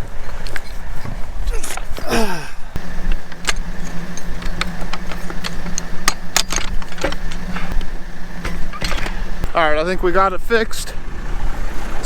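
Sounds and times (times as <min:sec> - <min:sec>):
tractor engine running: 0:01.6 - 0:10.3
steady hum: 0:01.8 - 0:09.8
metallic clinks and taps: 0:02.8 - 0:09.5.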